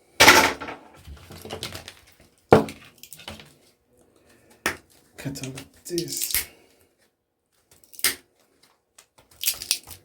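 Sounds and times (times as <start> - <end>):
plastic and metal parts clattering: 0.2 - 3.6.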